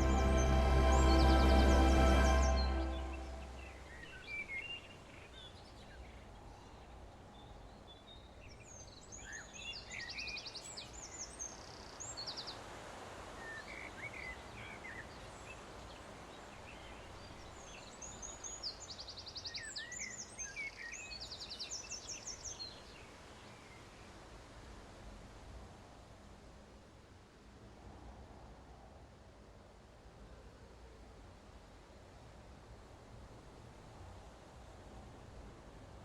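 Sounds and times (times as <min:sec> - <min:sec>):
background hiss: 0:00.0 - 0:04.0.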